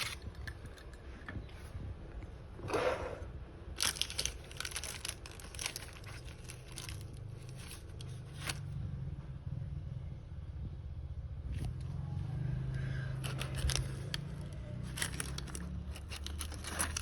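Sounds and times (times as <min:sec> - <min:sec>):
crinkling and tearing: 0:00.0 - 0:01.0, 0:03.7 - 0:08.6, 0:13.1 - 0:17.0
steady low hum: 0:00.0 - 0:17.0.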